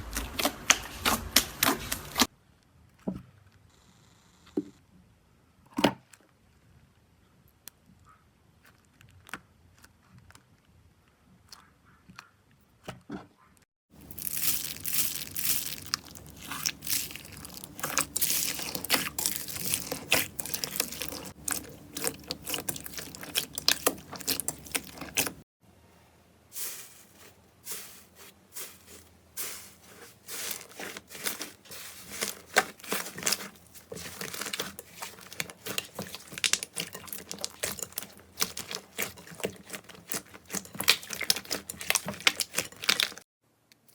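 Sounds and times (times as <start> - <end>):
slime squeezed by hand crackling: 14.0 - 25.4.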